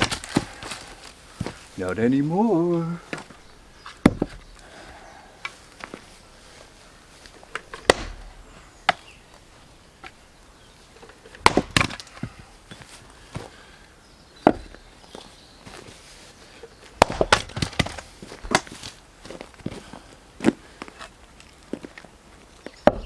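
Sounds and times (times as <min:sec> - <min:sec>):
axe chopping firewood: 0:00.0 - 0:04.8, 0:07.2 - 0:10.4, 0:11.0 - 0:12.5, 0:14.4 - 0:14.9, 0:16.9 - 0:19.8
light knocks of wood: 0:03.1 - 0:04.7, 0:14.4 - 0:15.9.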